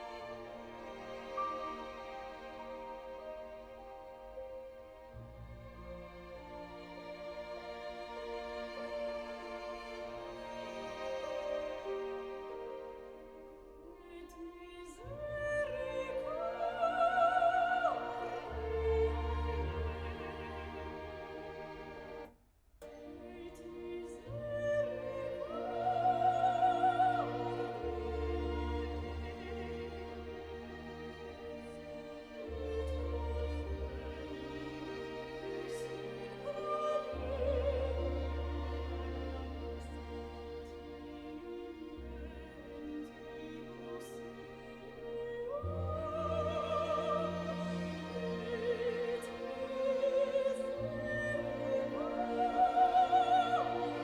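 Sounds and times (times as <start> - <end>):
orchestral accompaniment: 0.0 - 54.0
opera singer with vibrato: 13.8 - 21.3, 23.0 - 30.0, 32.4 - 40.0, 41.3 - 54.0.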